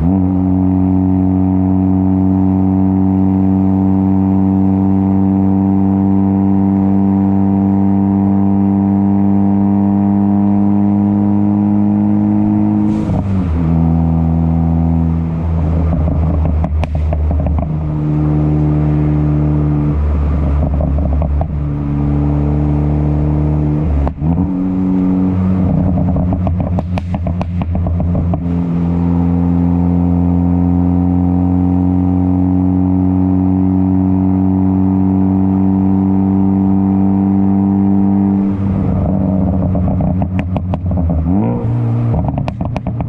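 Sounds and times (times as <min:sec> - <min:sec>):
car engine revving: 0:00.0 - 0:43.0
exhaust pops and crackles: 0:15.7 - 0:17.9, 0:20.4 - 0:21.6, 0:25.6 - 0:28.5, 0:39.0 - 0:41.3, 0:42.0 - 0:43.0.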